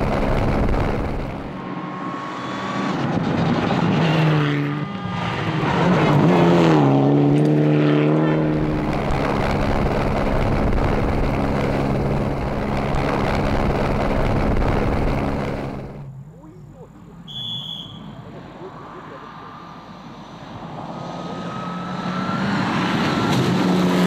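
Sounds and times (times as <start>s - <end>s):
rally car engine revving: 0.0s - 16.1s, 20.5s - 24.0s
tyre and road noise: 0.0s - 24.0s.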